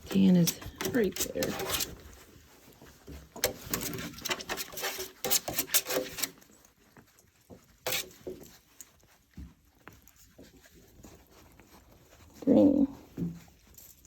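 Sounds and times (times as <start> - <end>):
puppies scrabbling and clicking: 0.0 - 14.0
puppy noises: 8.5 - 14.0.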